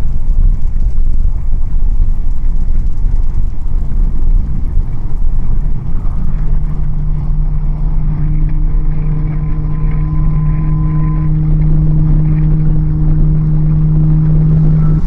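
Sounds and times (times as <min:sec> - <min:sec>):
heavy vehicle engine rumble: 0:00.0 - 0:15.0.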